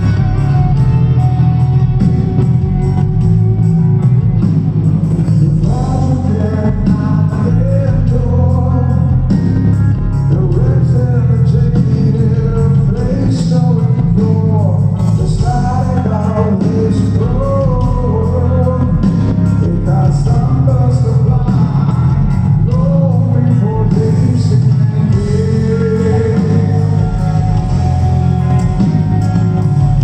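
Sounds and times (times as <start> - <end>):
rock band playing live: 0.0 - 30.0
man singing lead: 5.4 - 29.3.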